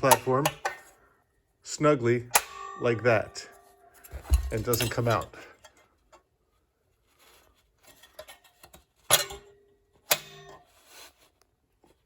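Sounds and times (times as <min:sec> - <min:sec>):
soft metal scraping: 0:10.5 - 0:11.4.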